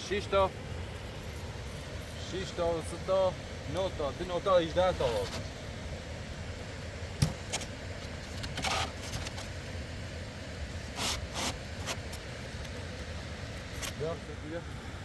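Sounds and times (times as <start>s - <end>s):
scraping handling noises: 5.0s - 5.6s, 7.2s - 9.6s.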